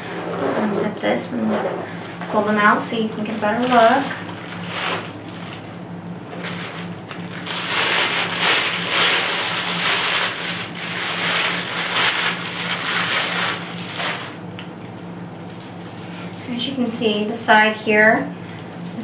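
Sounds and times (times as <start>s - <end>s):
bubble wrap crinkling: 2.5s - 14.5s.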